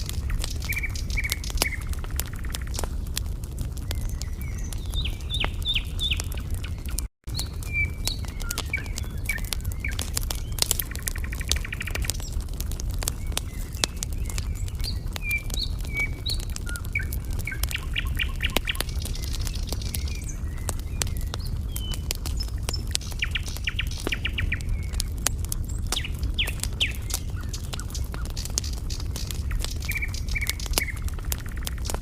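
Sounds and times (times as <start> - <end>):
small birds chirping: 0.0 - 32.0
wood fire crackling and popping: 0.0 - 32.0.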